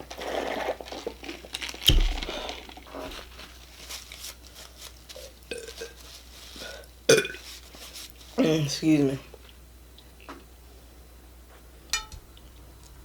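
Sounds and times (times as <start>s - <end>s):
wrapper paper crinkling: 0.1s - 6.7s, 7.4s - 8.4s
food being handled: 0.8s - 6.8s.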